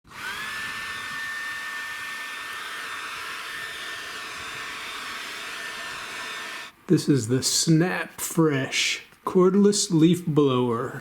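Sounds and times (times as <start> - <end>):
leaf blower running: 0.0 - 6.7.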